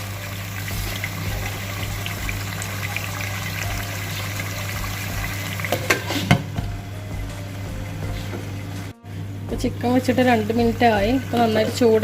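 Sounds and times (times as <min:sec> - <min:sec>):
chicken sizzling in hot oil: 0:00.0 - 0:06.6
pan lid clattering: 0:05.6 - 0:06.7.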